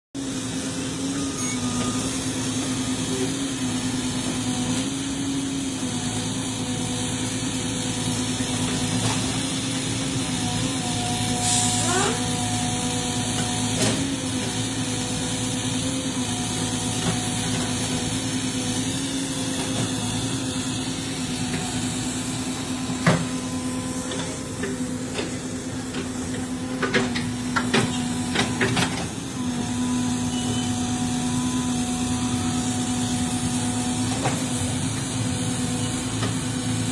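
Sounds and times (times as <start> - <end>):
excavator diesel engine running: 0.2 - 36.9.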